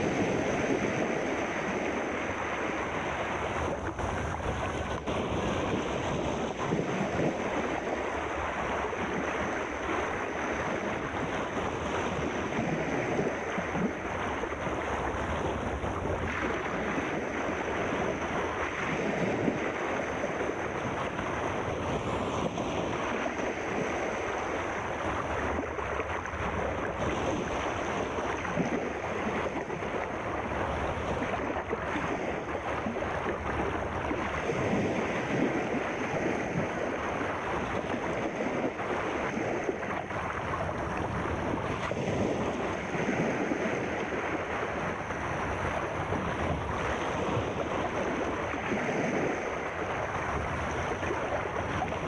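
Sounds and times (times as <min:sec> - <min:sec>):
rushing water: 0:00.0 - 0:52.0.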